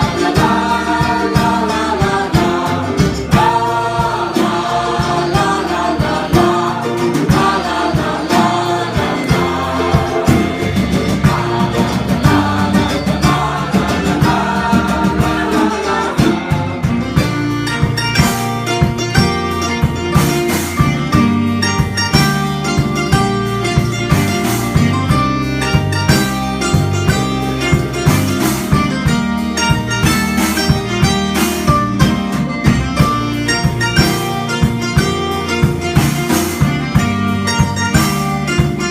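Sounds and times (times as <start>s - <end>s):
voices singing: 0.0s - 17.5s
guitar: 0.0s - 38.9s
plucked strings: 0.0s - 38.9s
steady drum beat: 0.0s - 38.9s.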